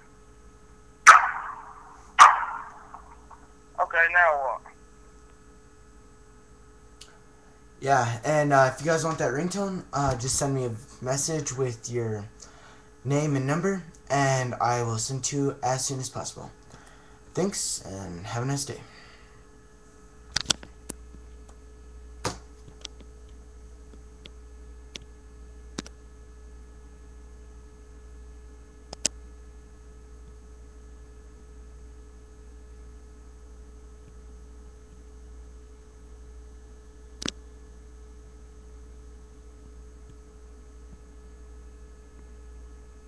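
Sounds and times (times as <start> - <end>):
electrical hum: 0.0 - 43.0
faint steady tones: 1.1 - 4.7
sharp clicks: 28.9 - 29.2.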